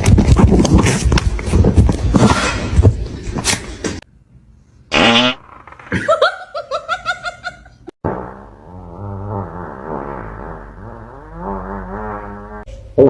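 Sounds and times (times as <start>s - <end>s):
person snickering: 5.9s - 7.9s.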